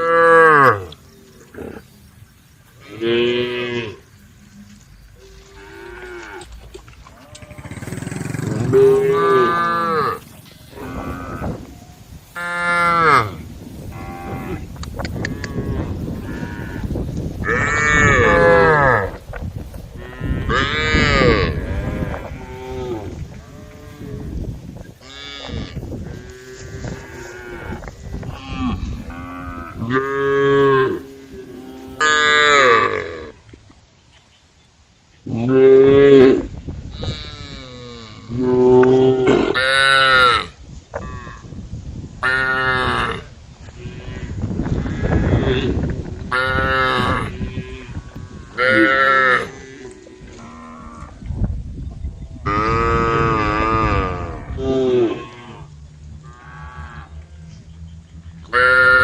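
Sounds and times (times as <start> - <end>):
cattle mooing: 5.2 - 11.7, 20.0 - 24.4, 25.0 - 33.3, 52.5 - 57.4.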